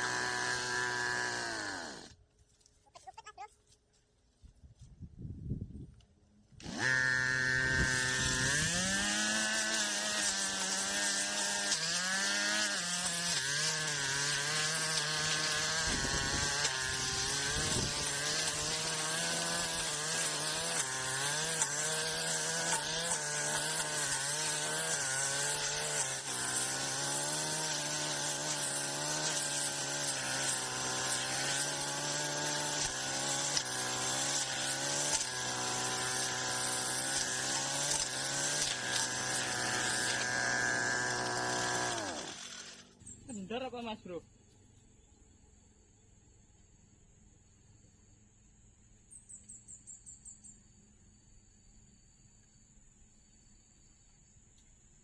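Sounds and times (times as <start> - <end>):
brush cutter engine running: 0.0 - 2.2, 6.6 - 44.2.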